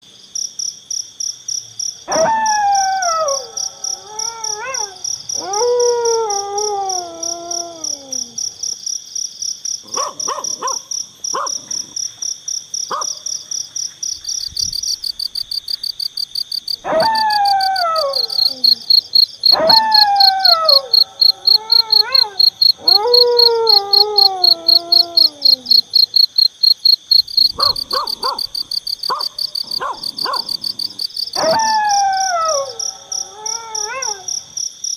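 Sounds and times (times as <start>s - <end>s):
crickets chirping: 0.1s - 34.9s
dog howling: 2.1s - 8.4s, 16.8s - 26.0s, 29.8s - 34.3s
dog yipping: 9.9s - 10.8s, 11.4s - 11.6s, 16.8s - 26.8s, 27.5s - 30.7s, 31.4s - 32.8s.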